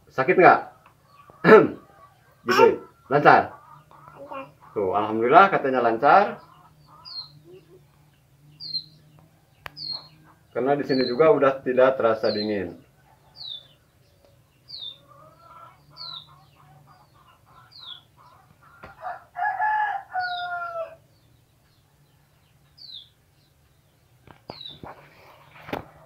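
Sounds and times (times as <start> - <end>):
small birds chirping: 0.0 - 26.0
rooster crowing: 18.8 - 21.0.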